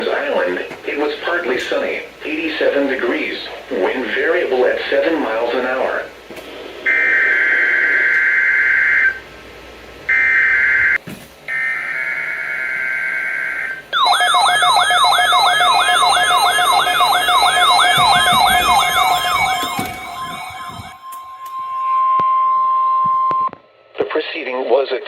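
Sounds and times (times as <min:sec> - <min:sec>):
screechy digital data bursts: 0:13.5 - 0:21.6
warbling alert tone: 0:14.0 - 0:22.2.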